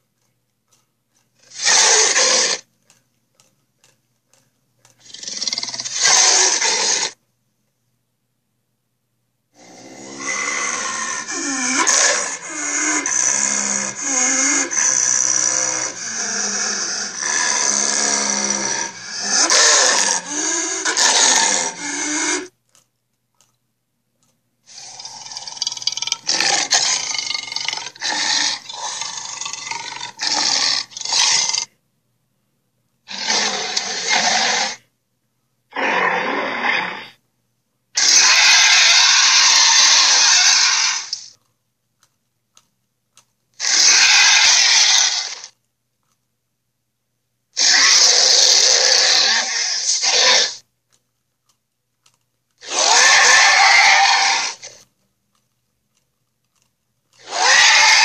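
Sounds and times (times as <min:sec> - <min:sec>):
rasping dinosaur roars: 0:01.4 - 0:02.6, 0:05.0 - 0:07.2, 0:09.6 - 0:22.5, 0:24.7 - 0:31.7, 0:33.1 - 0:34.8, 0:35.7 - 0:37.2, 0:38.0 - 0:41.3, 0:43.6 - 0:45.5, 0:47.6 - 0:50.6, 0:52.6 - 0:54.8, 0:57.2 - 0:58.0.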